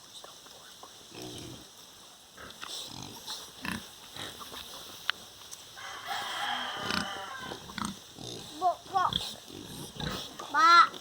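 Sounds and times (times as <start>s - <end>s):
pigs grunting: 2.4s - 4.5s, 6.8s - 11.0s.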